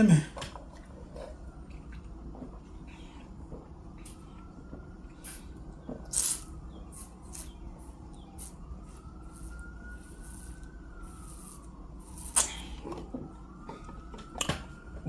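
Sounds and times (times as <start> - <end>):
distant siren: 0.0 - 15.0
chewing and lip smacks: 0.8 - 3.4.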